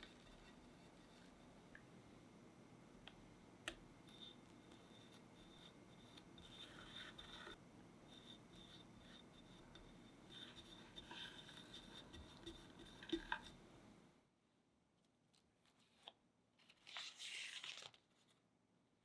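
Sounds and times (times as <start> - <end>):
spatula scraping cream on cake: 4.1 - 13.6.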